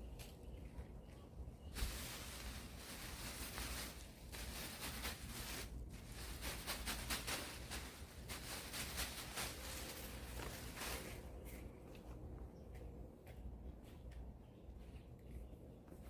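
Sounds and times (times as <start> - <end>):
hands rustling and scraping: 1.7 - 13.4.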